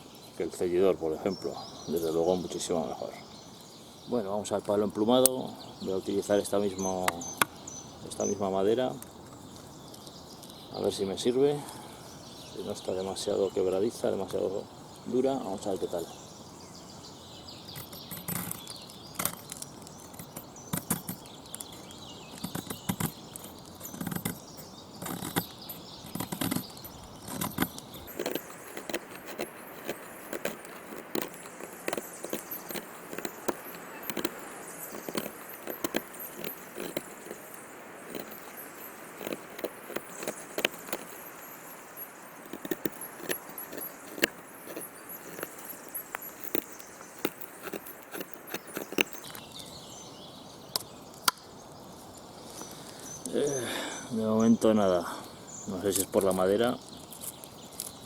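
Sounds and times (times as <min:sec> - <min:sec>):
knife scraping wooden stick: 0:17.7 - 0:49.4.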